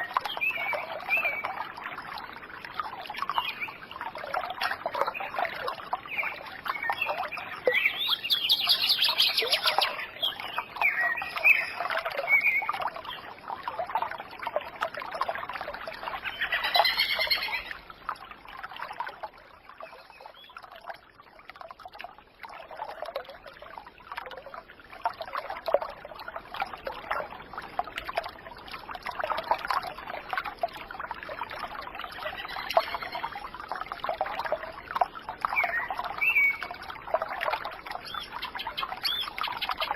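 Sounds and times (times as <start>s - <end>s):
running water trickling: 0.0s - 39.9s
birds chirping and singing: 7.7s - 12.6s, 38.1s - 39.9s.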